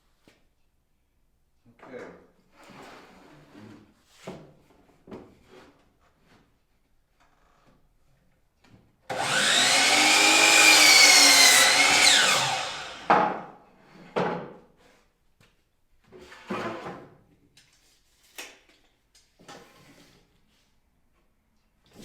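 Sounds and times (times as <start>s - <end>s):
electric power tool running: 9.1s - 13.2s.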